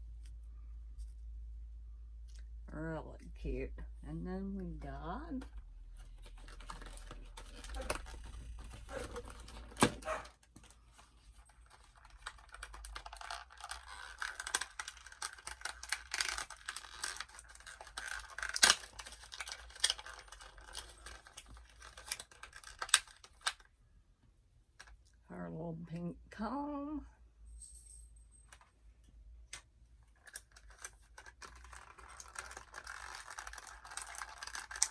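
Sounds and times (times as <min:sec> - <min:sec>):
packaging tearing and crinkling: 0:06.1 - 0:10.3, 0:11.4 - 0:23.7, 0:30.2 - 0:34.9
small plastic pieces clicking: 0:11.6 - 0:23.7, 0:29.5 - 0:34.9.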